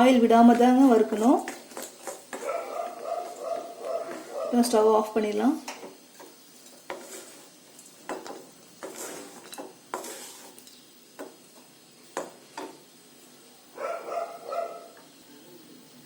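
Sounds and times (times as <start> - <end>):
spoon scraping metal pan: 3.2 - 4.8, 6.2 - 10.9.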